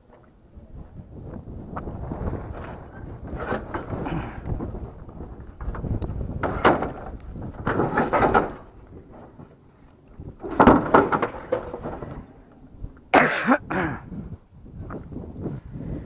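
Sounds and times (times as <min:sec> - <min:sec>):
scrap pieces scraping and knocking: 0:02.5 - 0:04.6, 0:05.5 - 0:09.5, 0:10.4 - 0:12.3.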